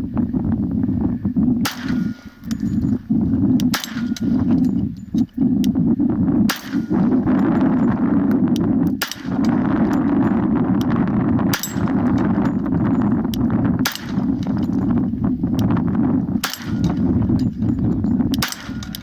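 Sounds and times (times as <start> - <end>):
steady low rumble: 0.0 - 19.0
gunshots: 1.6 - 2.5, 3.7 - 4.6, 6.5 - 7.4, 9.0 - 10.2, 13.8 - 14.8, 16.4 - 17.4, 18.4 - 19.0.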